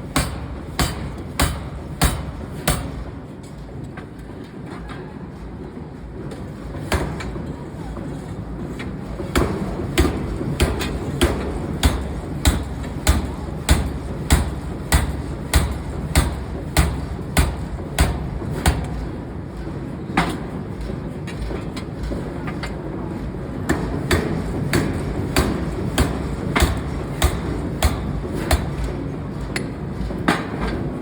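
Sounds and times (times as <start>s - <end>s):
forging hammer striking metal: 0.0s - 3.1s, 9.4s - 19.0s, 24.1s - 28.9s.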